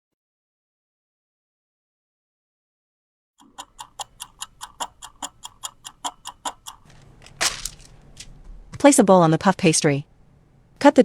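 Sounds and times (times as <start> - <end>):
fast clock-like ticking: 3.4 - 7.0.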